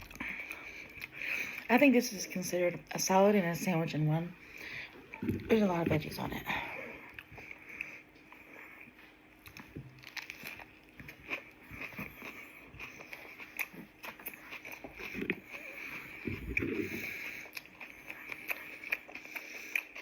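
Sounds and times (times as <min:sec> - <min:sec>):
chewing crunches: 0:07.0 - 0:20.0.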